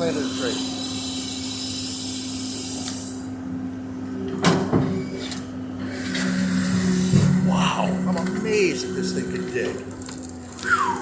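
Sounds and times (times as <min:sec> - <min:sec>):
excavator engine running: 0:05.4 - 0:11.0.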